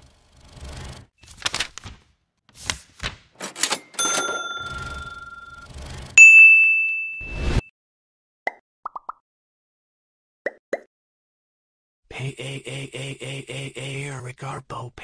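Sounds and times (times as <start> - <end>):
high bell-like ding: 6.2 - 7.7.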